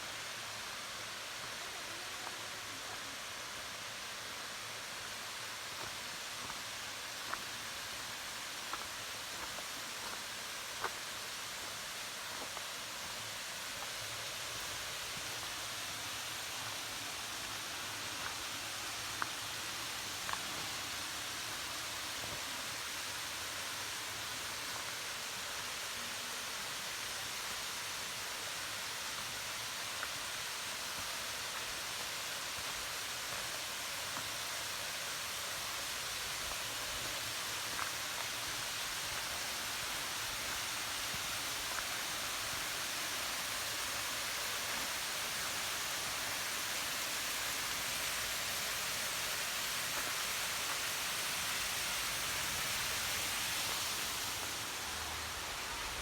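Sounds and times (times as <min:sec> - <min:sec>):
waterfall rushing: 0:31.0 - 0:56.0.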